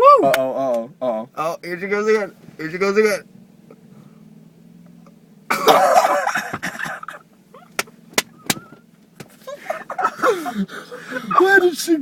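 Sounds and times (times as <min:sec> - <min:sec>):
riding lawnmower engine drone: 0:00.0 - 0:11.9
person coughing: 0:05.5 - 0:07.2.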